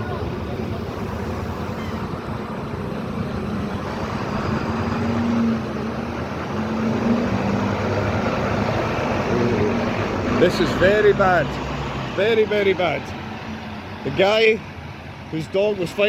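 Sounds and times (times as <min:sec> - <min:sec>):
engine and road rumble: 0:00.0 - 0:16.0.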